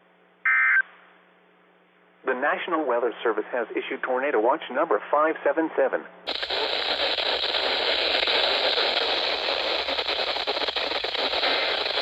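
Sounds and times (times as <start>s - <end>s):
radio static hiss: 4.8s - 12.0s
faint clicks and crackles: 6.3s - 12.0s.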